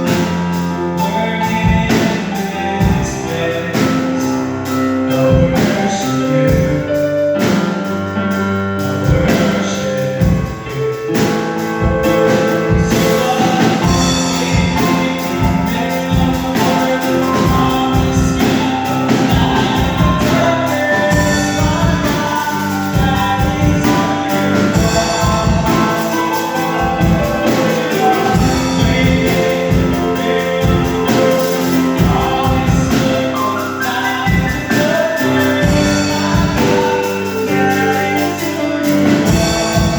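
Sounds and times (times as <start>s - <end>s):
band with drum beat: 0.0s - 39.9s
voices singing gospel: 8.8s - 39.9s.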